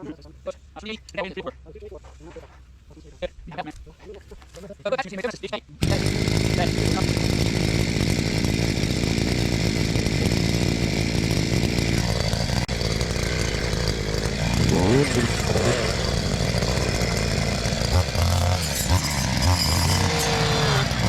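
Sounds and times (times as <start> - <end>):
chainsaw cutting: 5.8 - 21.0.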